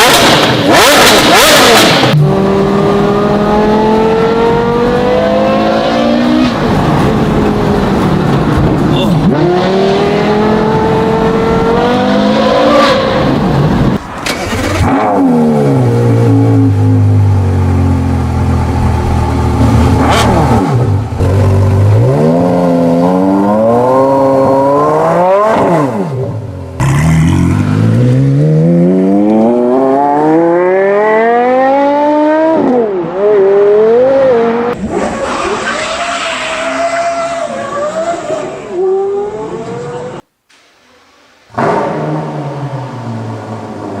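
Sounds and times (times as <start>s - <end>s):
sports car engine revving: 8.7s - 34.8s.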